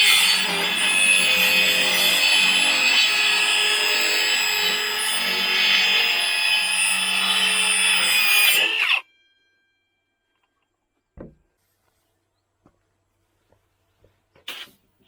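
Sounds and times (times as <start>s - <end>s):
circular saw cutting plywood: 0.0s - 9.1s
dull thump: 11.2s - 11.4s.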